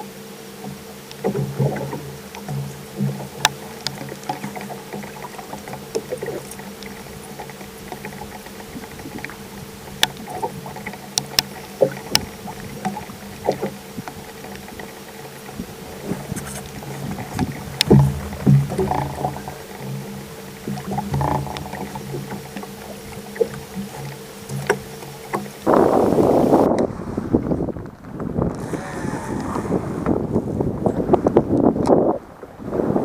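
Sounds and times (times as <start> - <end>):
boat motor humming: 0.0 - 33.0
sharp clicks and knocks: 0.6 - 25.6.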